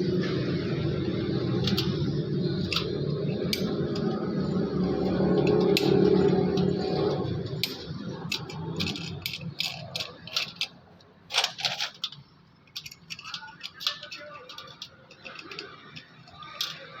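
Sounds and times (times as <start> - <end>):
metal parts clicking and clinking: 0.1 - 17.0.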